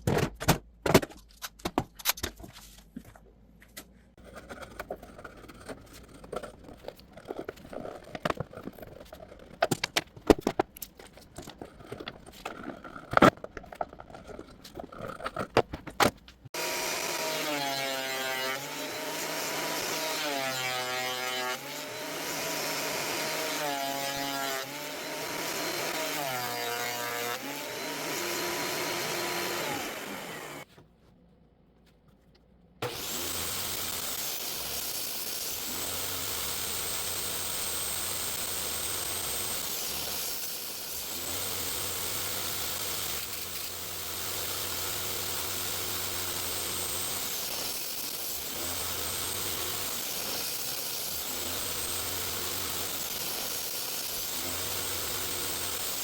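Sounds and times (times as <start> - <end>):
woodworking power tool whining: 16.5 - 30.7, 32.8 - 56.0.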